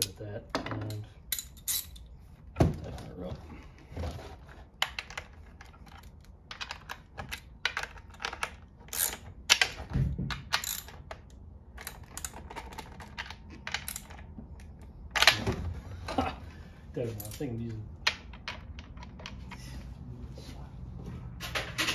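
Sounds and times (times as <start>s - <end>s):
wrench clicking and scraping on metal: 0.8s - 2.1s, 4.8s - 9.8s, 10.4s - 14.3s.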